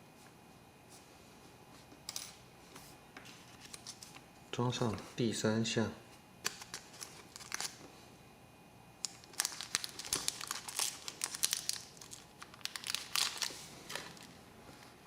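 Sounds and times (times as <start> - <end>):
packaging crinkling: 6.5 - 7.8, 9.0 - 14.4.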